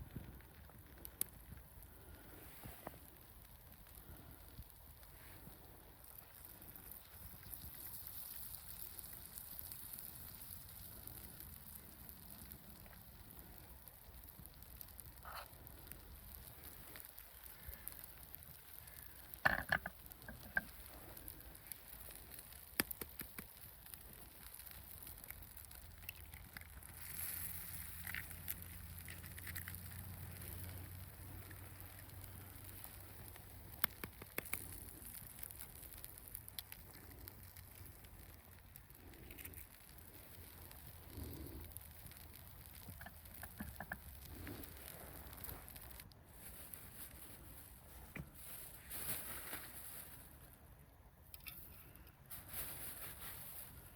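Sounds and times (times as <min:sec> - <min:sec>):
sharp pops of fire: 0:00.0 - 0:46.2
campfire crackling: 0:00.0 - 0:53.9
steady hiss: 0:00.0 - 0:53.9.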